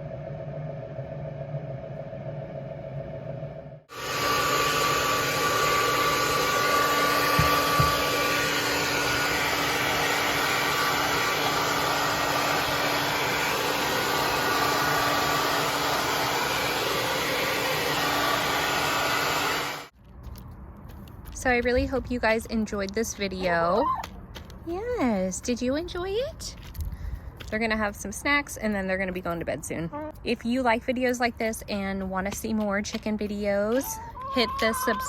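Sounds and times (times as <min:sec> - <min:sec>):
electric blower rushing and whining: 0:00.0 - 0:19.9, 0:34.1 - 0:35.0.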